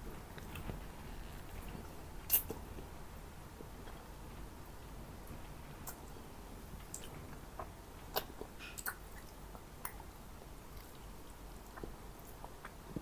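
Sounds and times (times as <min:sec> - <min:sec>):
person chewing: 0:00.4 - 0:02.9, 0:06.8 - 0:13.0.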